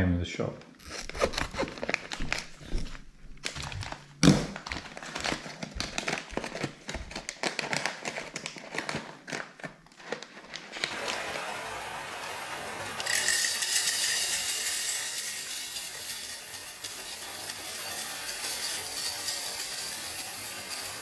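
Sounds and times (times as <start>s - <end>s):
crinkling packaging: 0.8s - 11.4s
steady hiss: 10.9s - 21.0s.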